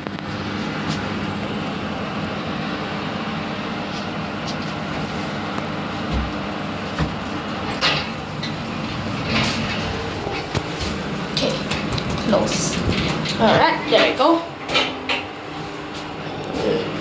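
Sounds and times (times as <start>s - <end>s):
lift mechanical hum: 0.0s - 17.0s
clunks and rattles: 6.0s - 16.7s.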